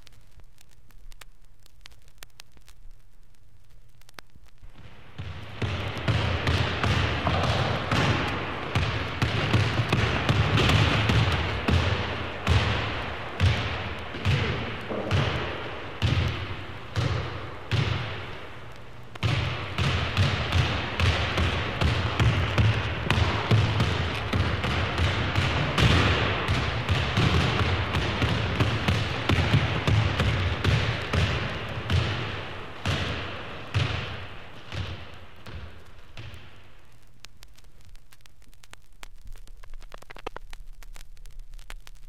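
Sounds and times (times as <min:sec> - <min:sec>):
basketball bouncing on hard floor: 0:04.8 - 0:18.3, 0:19.2 - 0:36.5.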